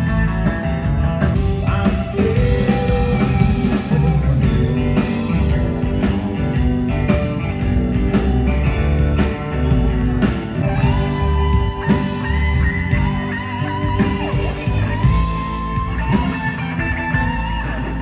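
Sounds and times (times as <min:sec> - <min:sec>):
electric guitar: 0:00.0 - 0:18.0
steady drum beat: 0:00.0 - 0:18.0
person singing: 0:01.6 - 0:05.9.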